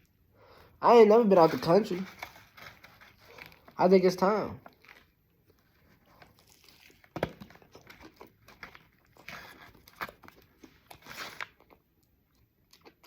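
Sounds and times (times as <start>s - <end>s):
chewing and mouth clicks: 4.7s - 13.0s.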